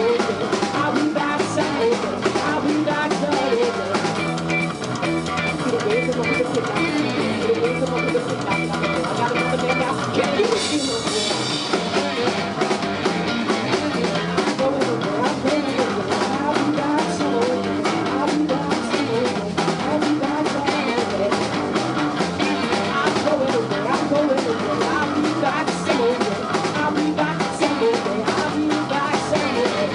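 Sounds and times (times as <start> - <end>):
live rock band playing: 0.0 - 29.9.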